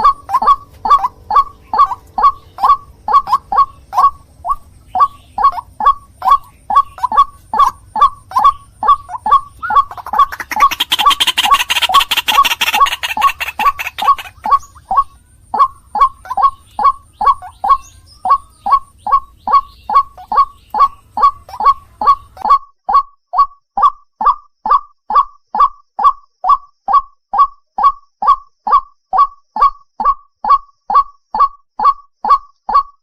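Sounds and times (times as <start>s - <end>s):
low hum: 0.0s - 22.4s
waterhen calling harsh notes: 0.0s - 23.0s.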